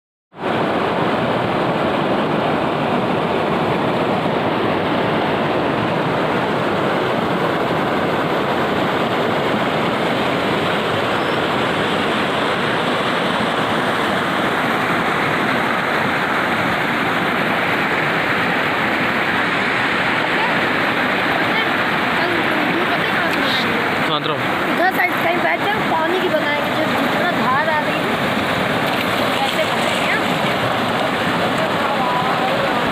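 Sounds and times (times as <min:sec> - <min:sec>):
river rushing over rocks: 0:00.4 - 0:32.9.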